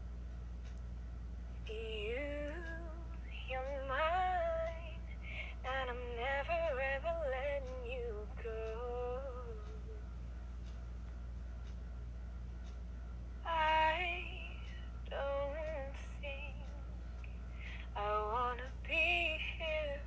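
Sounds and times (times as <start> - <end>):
steady low hum: 0.0 - 20.0
girl singing: 1.7 - 9.9, 13.5 - 16.7, 18.0 - 20.0.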